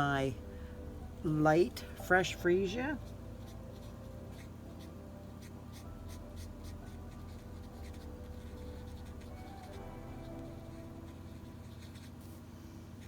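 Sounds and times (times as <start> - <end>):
faint steady hum: 0.0 - 13.0
marker scratching on card: 3.7 - 12.5.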